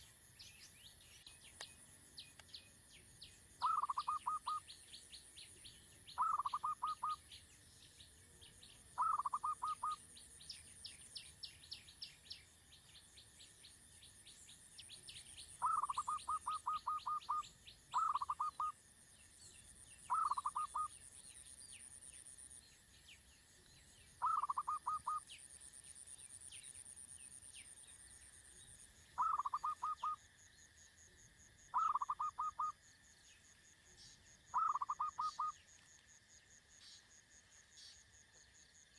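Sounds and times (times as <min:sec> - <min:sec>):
high bird chirps: 0:03.6 - 0:04.6, 0:06.2 - 0:07.2, 0:09.0 - 0:10.0, 0:15.6 - 0:18.7, 0:20.1 - 0:20.9, 0:24.2 - 0:25.2, 0:29.2 - 0:30.2, 0:31.7 - 0:32.8, 0:34.5 - 0:35.6
birds chattering: 0:06.2 - 0:07.2, 0:09.0 - 0:10.0, 0:15.6 - 0:18.7, 0:20.0 - 0:20.9, 0:24.2 - 0:25.2, 0:29.2 - 0:30.2, 0:31.8 - 0:32.7, 0:34.5 - 0:35.6.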